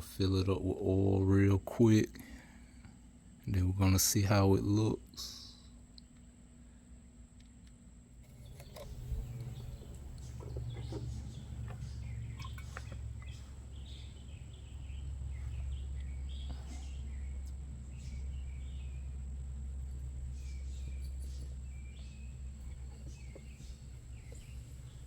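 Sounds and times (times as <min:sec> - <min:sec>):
birds chirping: 0:08.2 - 0:25.0.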